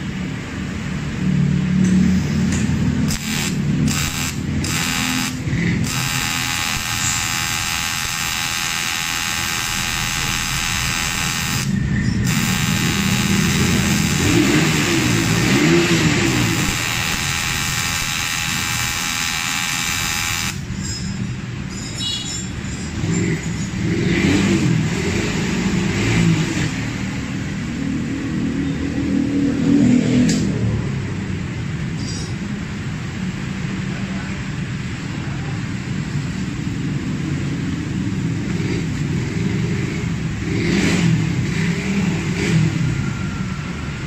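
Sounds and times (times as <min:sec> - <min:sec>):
arc welder buzzing: 0:02.6 - 0:20.8.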